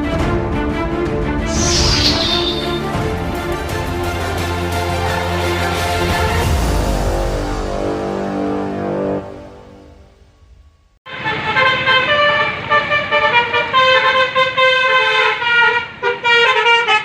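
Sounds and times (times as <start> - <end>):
music: 0.0 - 12.4
multi-tone bus horn tune: 11.1 - 17.0.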